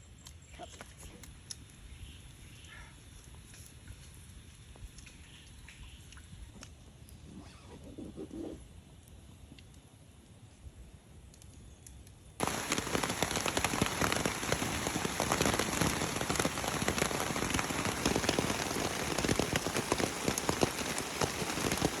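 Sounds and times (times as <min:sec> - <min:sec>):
rain falling on a surface: 0:12.4 - 0:22.0.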